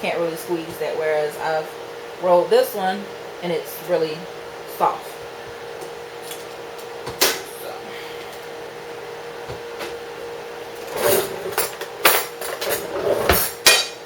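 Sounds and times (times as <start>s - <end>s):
faint hum: 0.0s - 12.2s
kitchen utensils knocking and clinking: 10.9s - 14.0s.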